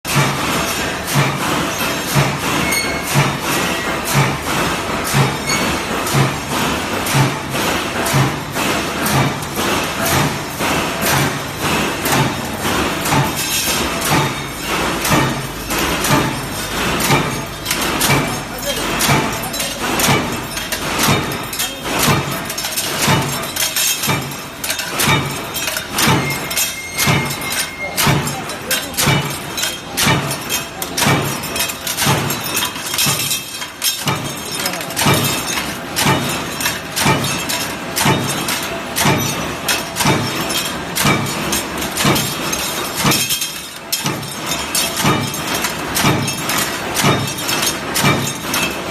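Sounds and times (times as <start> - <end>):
punching machine clanking strikes: 0.1 - 48.9.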